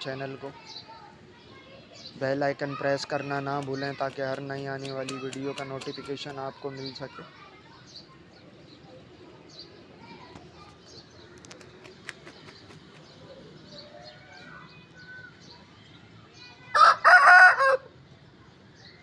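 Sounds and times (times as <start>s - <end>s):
faint chirps and clucks: 7.0s - 19.0s
cockerel crowing: 16.8s - 17.9s.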